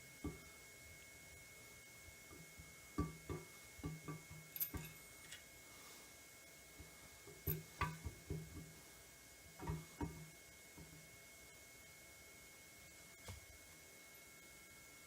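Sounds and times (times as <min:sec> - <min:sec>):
light metallic knocks and taps: 0:02.3 - 0:05.4, 0:09.6 - 0:11.0.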